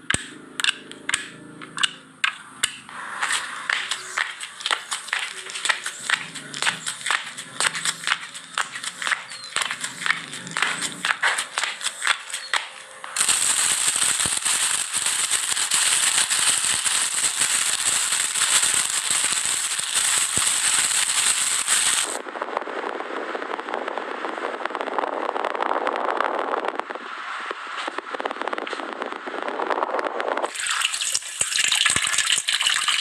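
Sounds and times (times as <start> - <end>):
sharp clicks and crackles: 0.0 - 23.8
dense crackling hiss: 1.8 - 33.0
soft steady rushing hiss: 2.6 - 32.3.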